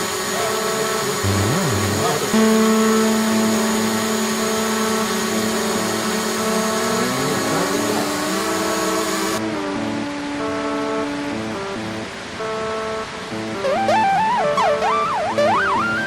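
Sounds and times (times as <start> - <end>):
drone propellers whining: 0.0 - 9.4.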